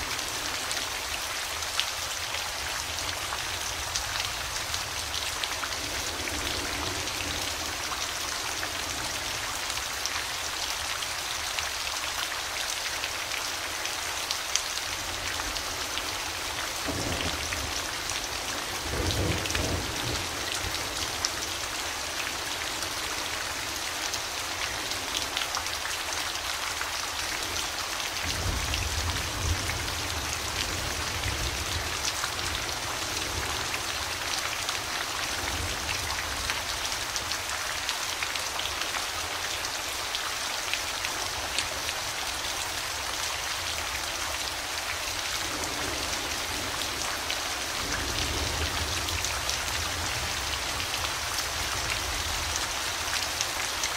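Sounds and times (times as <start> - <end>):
heavy rain falling: 0.0 - 53.9.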